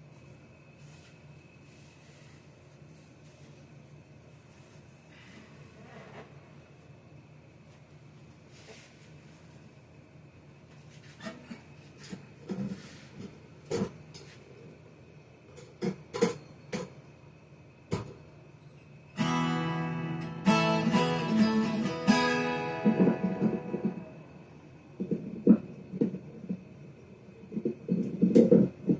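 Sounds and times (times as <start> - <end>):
taps on guitar strings: 19.2 - 24.1
acoustic guitar notes plucked: 19.2 - 24.3
acoustic guitar chord strummed: 19.2 - 24.4.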